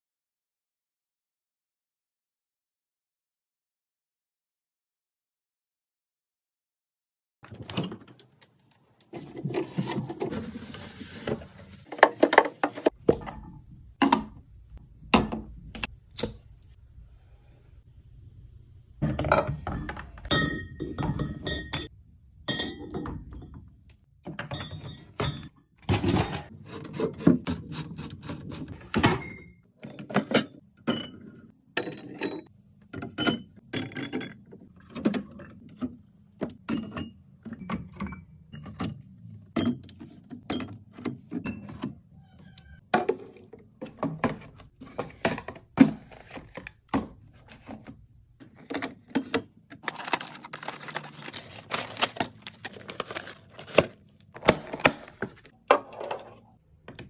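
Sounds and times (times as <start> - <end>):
packages thunking and clicking: 43.8 - 55.6.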